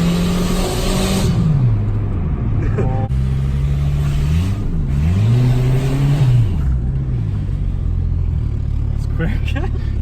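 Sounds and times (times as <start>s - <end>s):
turbocharged engine revving: 0.0s - 1.8s, 3.1s - 9.0s.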